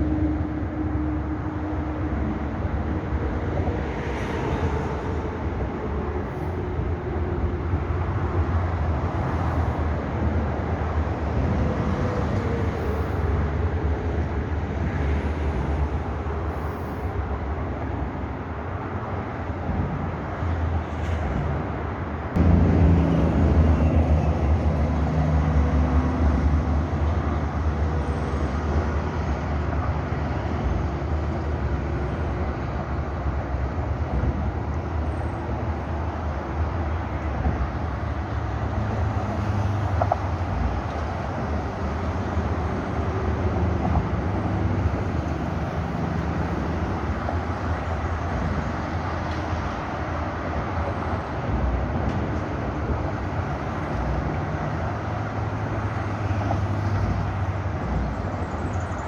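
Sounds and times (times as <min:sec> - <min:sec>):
moving vehicle rumble: 0:00.0 - 0:59.0.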